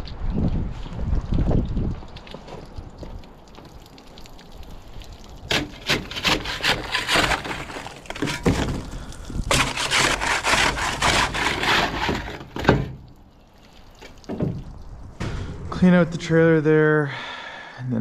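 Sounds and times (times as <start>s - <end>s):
rough scraping and cracking: 5.2s - 13.2s.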